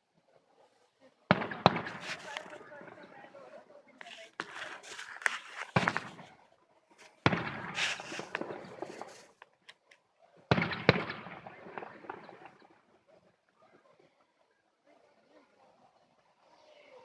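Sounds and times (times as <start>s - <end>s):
fireworks crackling tail: 1.3s - 3.4s, 4.0s - 6.4s, 7.0s - 9.5s
fireworks bangs: 1.3s - 6.4s, 7.0s - 9.4s, 10.5s - 12.8s.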